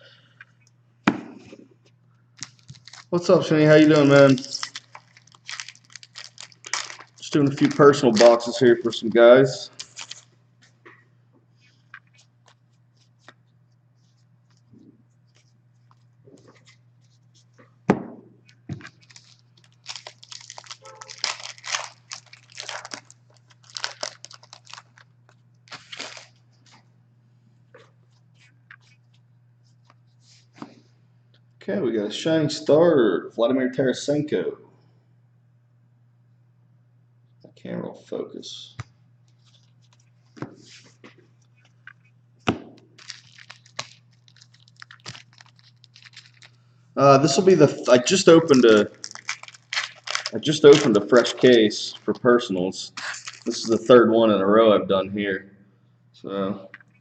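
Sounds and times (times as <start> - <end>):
low steady hum: 0.0 - 57.0
foil wrapper tearing and crinkling: 2.4 - 8.7, 9.7 - 10.3, 18.8 - 26.4, 43.0 - 46.6, 47.2 - 52.4, 53.0 - 53.9.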